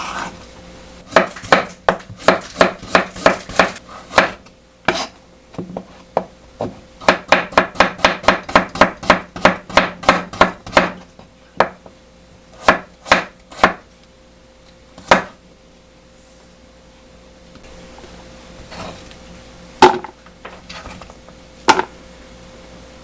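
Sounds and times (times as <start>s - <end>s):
knife chopping on cutting board: 1.1s - 5.1s, 6.6s - 11.8s, 12.6s - 13.8s, 15.0s - 15.4s.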